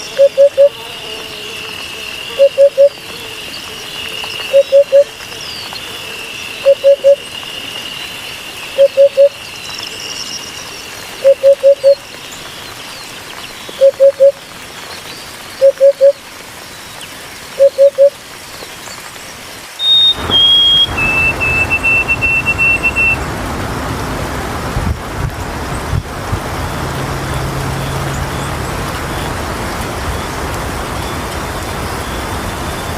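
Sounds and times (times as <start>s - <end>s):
bird whistling: 0.0s - 0.8s, 2.3s - 3.0s, 4.3s - 5.1s, 6.5s - 7.4s, 8.6s - 9.4s, 11.2s - 12.0s, 13.7s - 14.4s, 15.6s - 16.2s, 17.6s - 18.2s, 19.8s - 23.2s
bird hooting: 0.0s - 1.4s, 2.3s - 3.3s, 4.4s - 5.1s, 6.6s - 7.2s, 8.7s - 9.4s, 11.2s - 12.0s, 13.8s - 14.4s, 15.6s - 16.2s, 17.6s - 18.2s.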